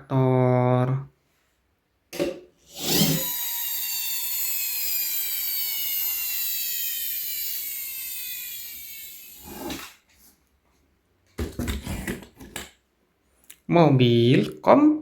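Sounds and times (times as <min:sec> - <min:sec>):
flywheel motor whine falling in pitch: 0:02.8 - 0:09.7.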